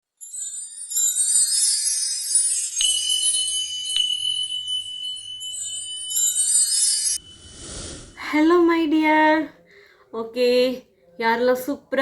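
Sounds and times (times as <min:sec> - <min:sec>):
jingling bells music: 0:00.1 - 0:09.1
steady high tone: 0:03.7 - 0:09.4.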